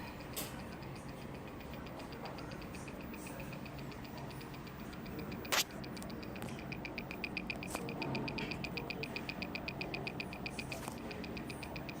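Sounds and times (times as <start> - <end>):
fast ticking clicks: 0.0 - 12.0
steady low hum: 0.0 - 12.0.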